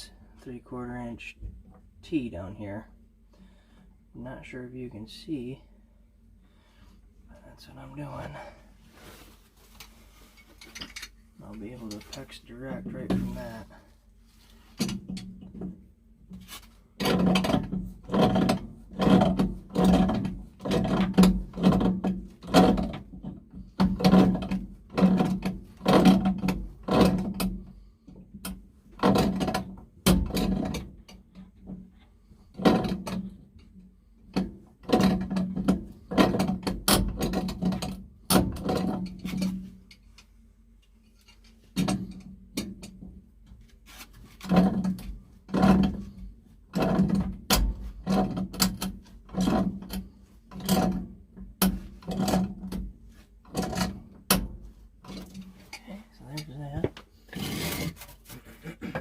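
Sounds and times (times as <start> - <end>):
hand tool rasping on metal: 57.2 - 59.0.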